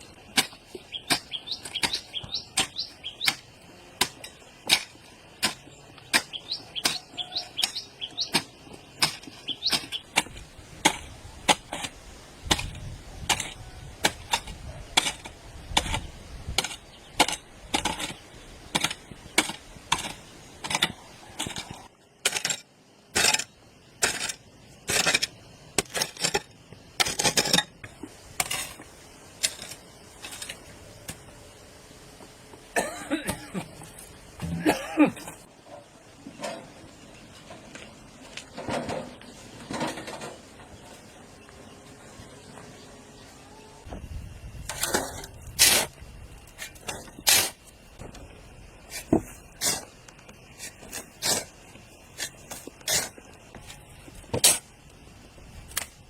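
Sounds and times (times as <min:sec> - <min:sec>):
birds chirping faintly: 0:00.1 - 0:11.4.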